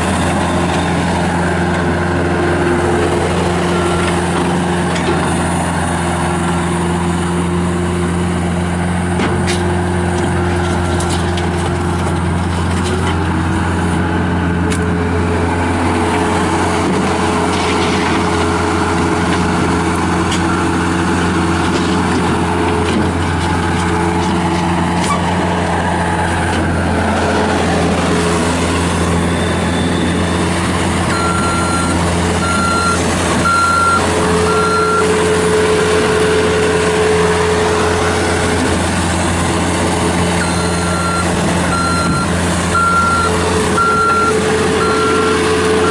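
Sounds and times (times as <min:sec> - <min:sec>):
diesel engine running: 0:00.0 - 0:45.9
backup alarm beeping: 0:31.1 - 0:35.1, 0:40.4 - 0:45.9.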